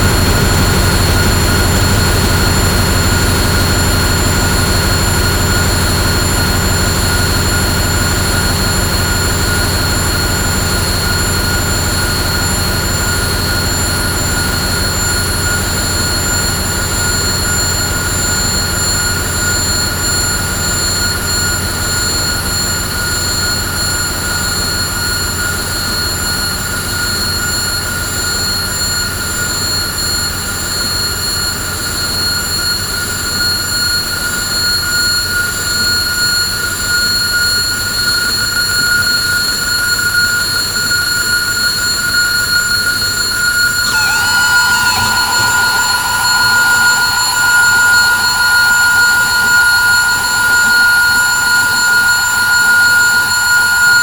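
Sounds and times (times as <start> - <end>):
harsh noise wall: 43.8 - 54.0
steady high whines: 43.8 - 54.0
swooping synth tone: 43.8 - 54.0.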